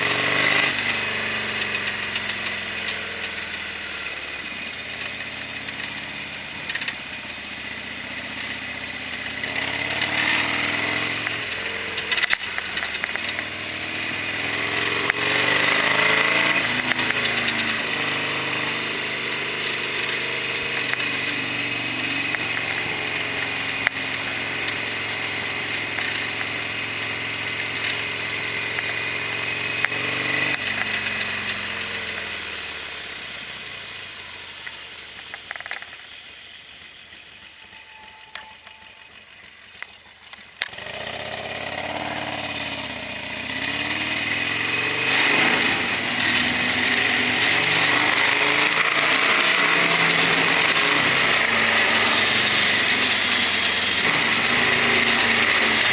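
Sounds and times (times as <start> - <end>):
motorcycle engine running: 0.0 - 55.9
sharp ticks: 6.6 - 7.2.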